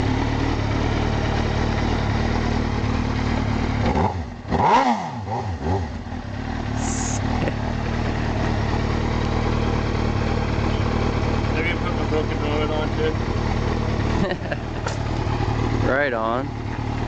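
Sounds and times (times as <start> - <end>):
low engine idle: 0.0 - 4.5, 5.9 - 17.0
motorcycle passing by: 0.0 - 10.9.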